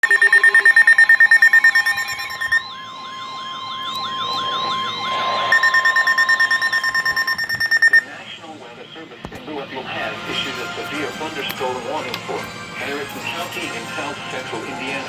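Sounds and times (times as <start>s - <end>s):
warbling siren-like alert tone: 0.0s - 8.0s
steady held tone: 0.0s - 8.1s
rapid electronic beeping: 0.0s - 8.4s.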